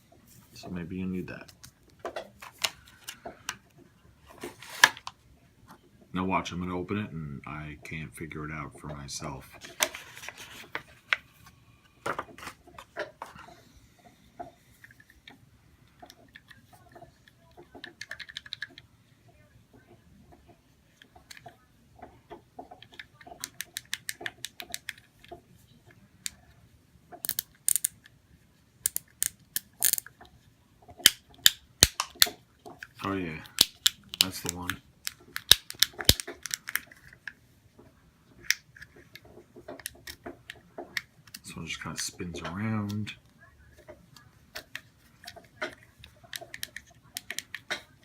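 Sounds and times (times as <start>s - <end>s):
plastic packaging rustling: 4.2s - 5.1s, 9.5s - 11.6s
fidget toy plastic clicks: 16.0s - 18.8s, 22.8s - 25.3s, 27.2s - 28.1s, 28.8s - 30.2s, 30.9s - 37.4s, 44.6s - 47.9s.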